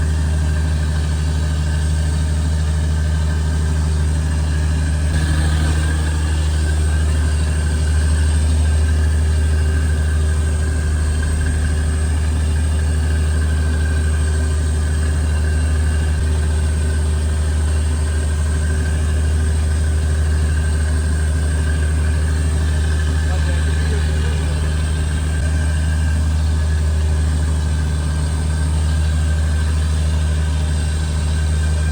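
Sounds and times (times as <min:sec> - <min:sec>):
boat engine droning: 0:00.0 - 0:31.9.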